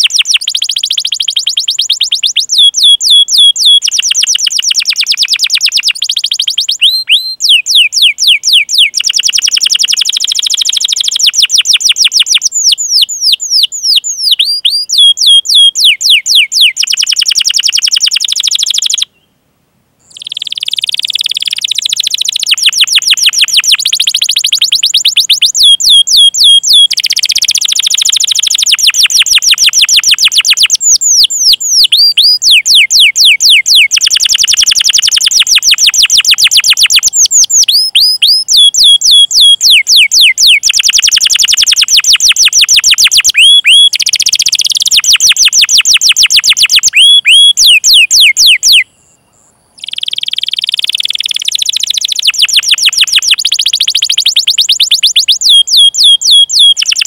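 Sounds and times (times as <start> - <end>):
canary singing chirps and trills: 0.0 - 19.3, 20.0 - 57.0.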